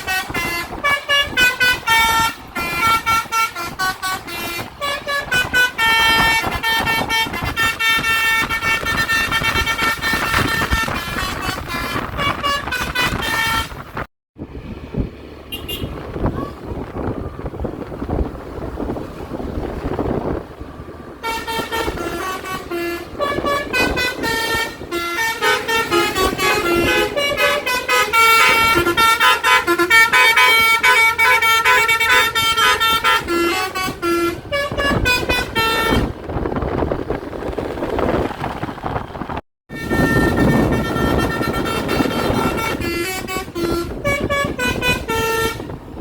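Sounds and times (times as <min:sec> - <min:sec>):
air horn tooting tune: 0:00.0 - 0:14.0, 0:15.5 - 0:16.0, 0:21.2 - 0:36.4, 0:39.7 - 0:46.0
road and engine noise: 0:00.0 - 0:46.0.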